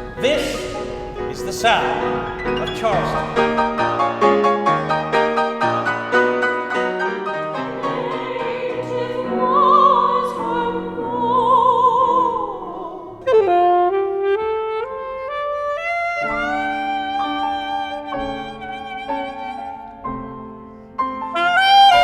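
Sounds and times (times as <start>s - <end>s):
musical accompaniment: 0.0s - 22.0s
classical voice singing with vibrato: 7.5s - 13.7s.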